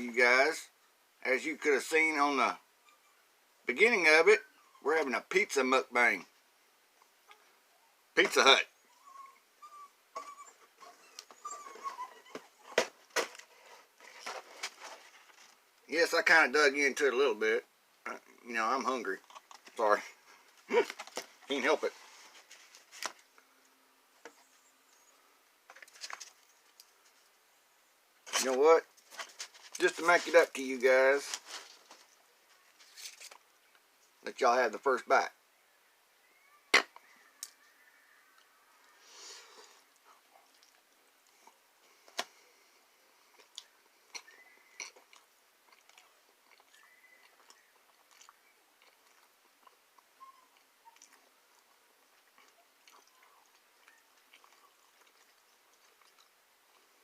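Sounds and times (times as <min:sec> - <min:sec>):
chewing with wet mouth clicks: 0:43.3 - 0:56.9.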